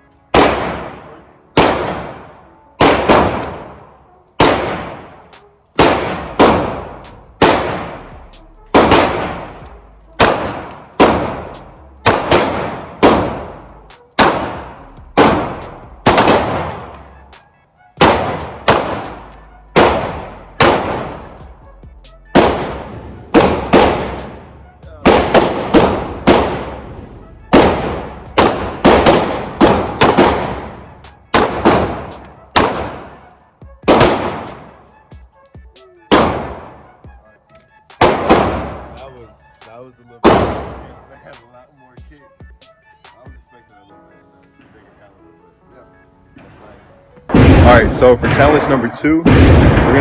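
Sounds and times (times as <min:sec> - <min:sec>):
pistol shots echoing: 0:00.3 - 0:21.6, 0:22.3 - 0:35.1, 0:36.1 - 0:37.0, 0:37.9 - 0:39.3, 0:40.2 - 0:41.1, 0:47.3 - 0:50.0.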